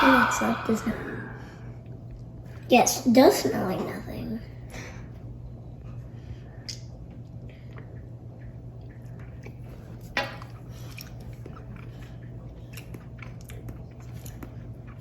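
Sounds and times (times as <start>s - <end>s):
person sipping liquid: 0.0s - 1.7s
low steady hum: 0.0s - 15.0s.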